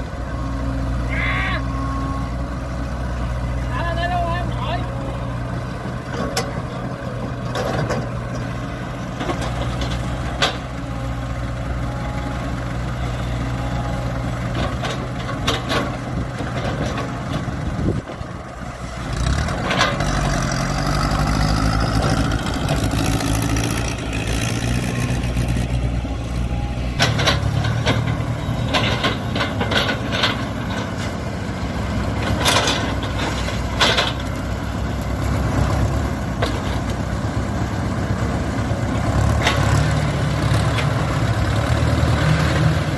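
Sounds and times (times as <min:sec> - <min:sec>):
heavy machinery diesel engine: 0:00.0 - 0:42.9
engine knocks: 0:14.3 - 0:25.9, 0:26.9 - 0:37.2.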